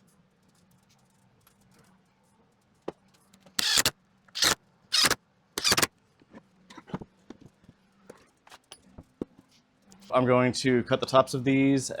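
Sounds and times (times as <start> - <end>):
power tool bursts: 3.6 - 5.9.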